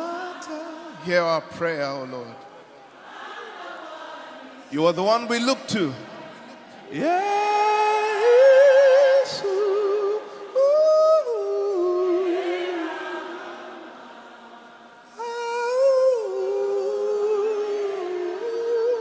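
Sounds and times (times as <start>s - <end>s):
slow worship melody: 0.0s - 19.0s.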